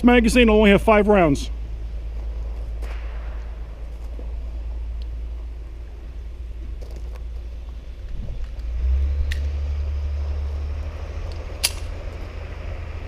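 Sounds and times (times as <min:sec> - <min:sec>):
wind buffeting microphone: 0:07.9 - 0:08.8.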